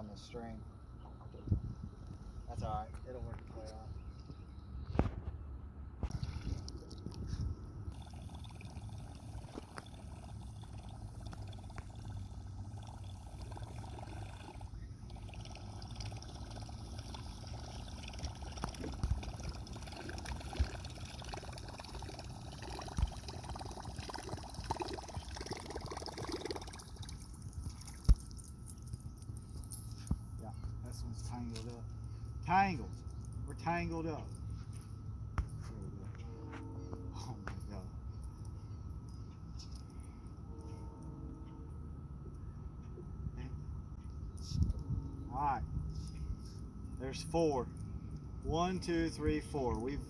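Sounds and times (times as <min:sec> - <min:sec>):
low steady hum: 0:00.0 - 0:50.0
water trickling and lapping: 0:06.0 - 0:29.5.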